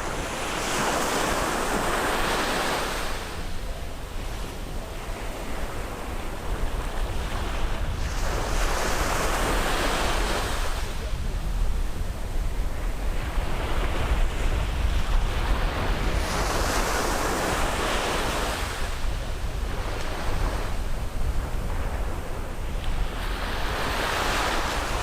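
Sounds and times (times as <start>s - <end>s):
sea waves breaking on beach: 0.0s - 25.0s.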